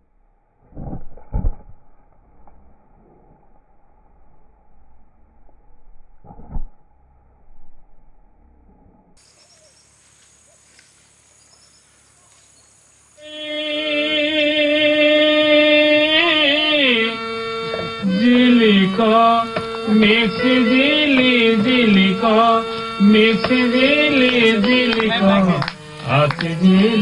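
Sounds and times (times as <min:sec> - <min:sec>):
faint hiss: 0:09.2 - 0:27.0
person singing long notes: 0:13.2 - 0:27.0.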